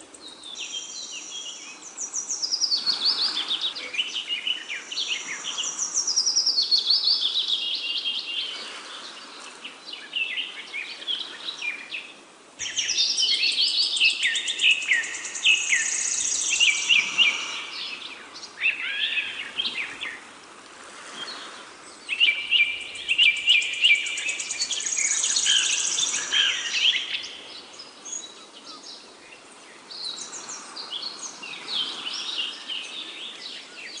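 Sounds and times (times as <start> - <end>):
songbirds chirping and trilling: 0.0 - 34.0.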